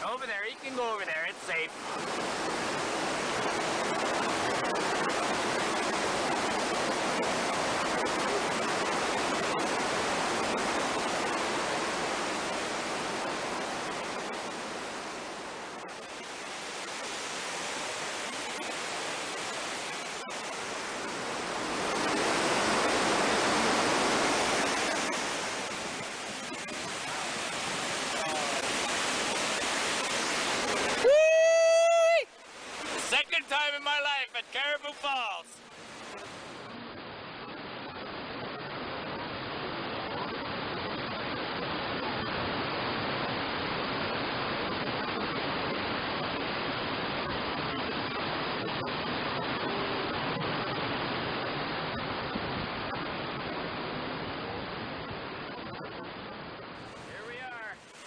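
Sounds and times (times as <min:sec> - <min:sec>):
waterfall roaring: 0:00.0 - 0:58.0.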